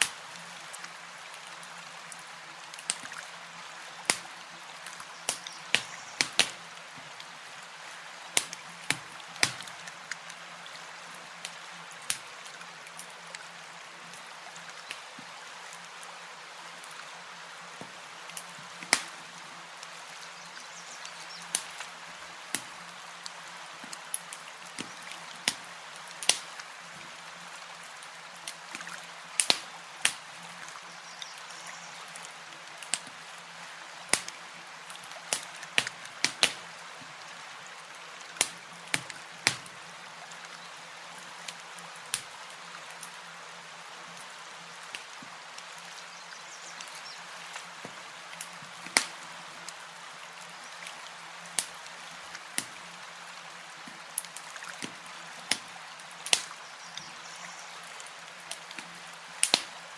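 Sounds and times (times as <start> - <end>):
campfire crackling and popping: 2.7 - 3.3, 4.0 - 7.3, 8.3 - 10.4, 11.3 - 15.8, 17.8 - 20.0, 21.0 - 26.7, 28.0 - 30.3, 32.1 - 33.2, 34.0 - 36.7, 38.4 - 39.9, 41.4 - 43.2, 44.2 - 45.3, 46.8 - 49.8, 51.5 - 52.9, 53.8 - 56.6, 58.4 - 59.8.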